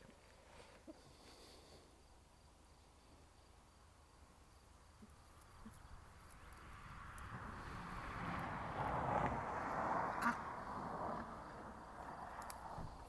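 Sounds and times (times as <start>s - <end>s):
soft ticks: 12.4s - 12.6s.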